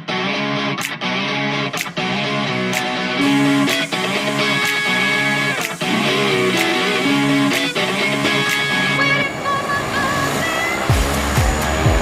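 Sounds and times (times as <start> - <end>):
melody over held chords: 0.0 - 9.4
drum beat with kick and hi-hats: 1.8 - 8.9, 10.9 - 12.0.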